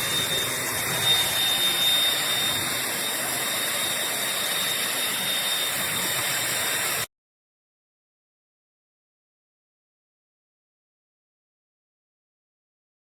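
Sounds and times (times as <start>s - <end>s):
stick vacuum running: 0.0s - 7.1s.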